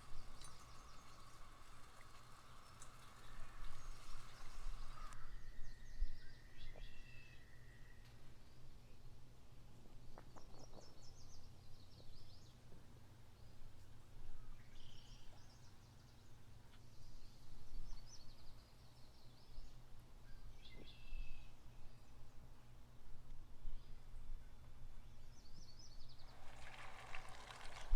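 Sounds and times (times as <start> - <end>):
songbirds twittering: 0.0 - 9.1, 13.3 - 22.4.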